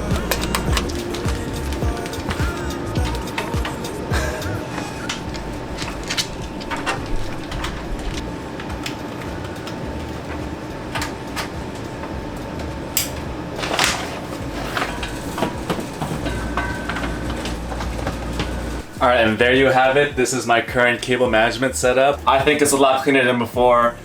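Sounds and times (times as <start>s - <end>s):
steady low rumble: 0.0s - 13.8s
cable clicks and rustles: 0.0s - 22.8s.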